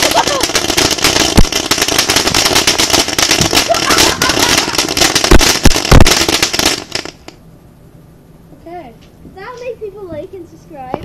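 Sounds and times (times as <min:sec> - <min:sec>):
fireworks bangs: 0:00.0 - 0:07.4
fireworks crackling: 0:00.0 - 0:07.4.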